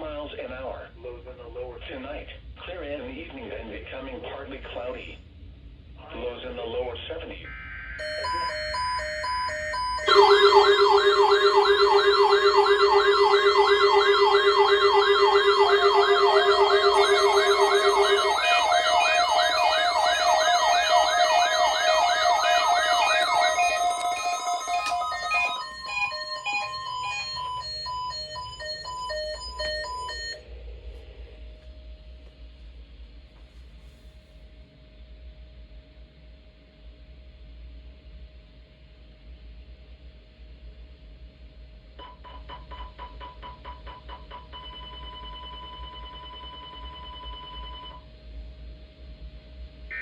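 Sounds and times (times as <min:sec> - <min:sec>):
siren sweeping up and down: 0:07.9 - 0:30.4
steady and pulsing beeps: 0:08.0 - 0:30.4.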